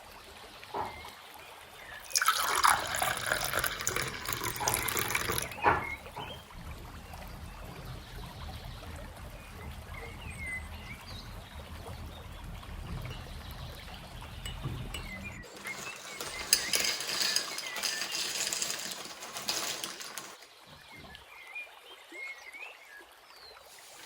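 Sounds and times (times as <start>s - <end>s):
water running and splashing: 0.0s - 14.4s, 23.6s - 24.0s.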